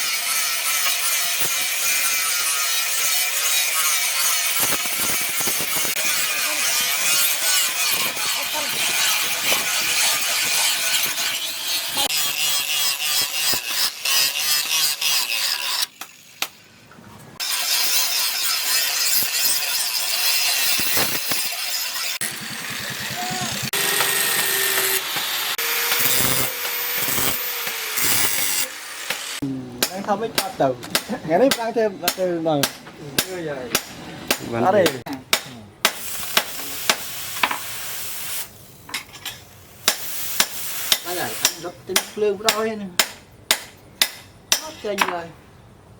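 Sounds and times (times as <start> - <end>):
file rasping on steel: 0.0 - 16.1, 17.4 - 29.4, 39.9 - 42.6
hammer striking steel on anvil: 29.8 - 37.1, 39.3 - 45.2
steady hiss: 35.9 - 38.8, 39.5 - 41.8.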